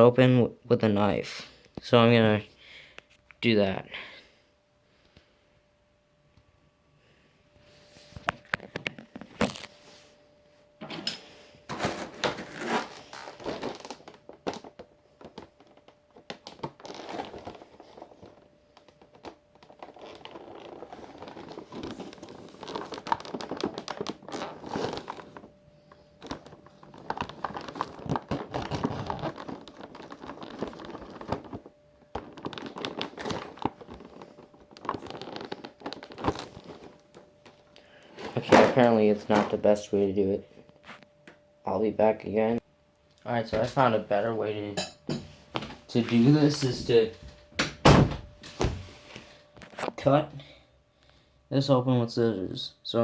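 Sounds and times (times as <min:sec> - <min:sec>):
packaging crinkling: 0:08.4 - 0:09.8, 0:11.7 - 0:39.9
knife cutting plastic packaging: 0:11.7 - 0:25.5, 0:26.2 - 0:37.1.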